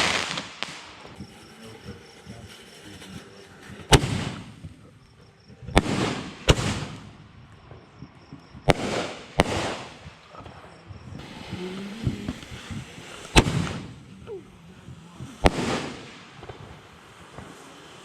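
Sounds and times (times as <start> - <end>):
fireworks bangs: 0.0 - 5.0, 5.6 - 18.0
fireworks crackle: 0.0 - 18.0.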